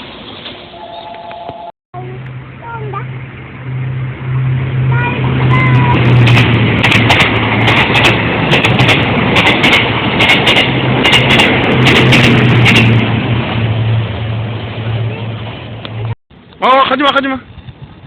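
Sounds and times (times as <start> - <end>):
train rumbling past: 0.0 - 16.2
train wheels clacking: 5.5 - 14.3.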